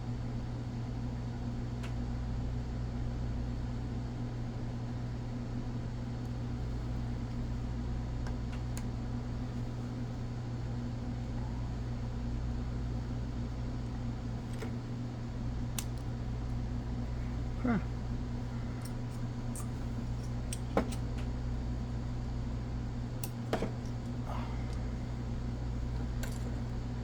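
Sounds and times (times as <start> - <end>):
electrical fan hum: 0.0 - 27.0
light clicks of small parts: 15.7 - 16.6, 18.8 - 21.3, 23.2 - 24.8.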